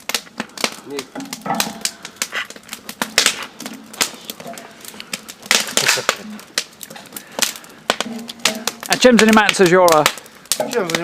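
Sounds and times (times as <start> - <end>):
campfire crackling: 0.0 - 11.0.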